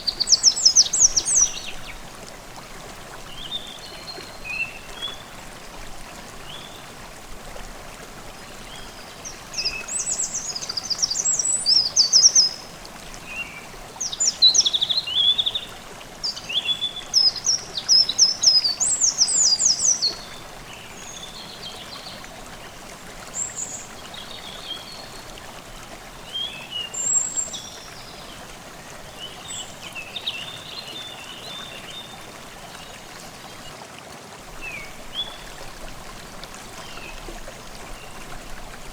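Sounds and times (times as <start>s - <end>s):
stream babbling: 0.0s - 38.9s
songbirds singing: 8.6s - 22.4s.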